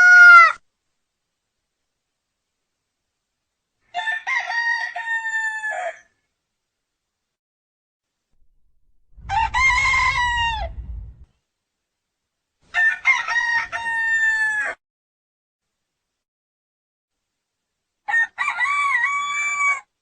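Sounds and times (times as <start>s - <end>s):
rooster crowing: 0.0s - 0.6s, 3.9s - 6.1s, 9.2s - 11.2s, 12.7s - 14.8s, 18.1s - 19.9s
low rumble: 8.4s - 11.3s.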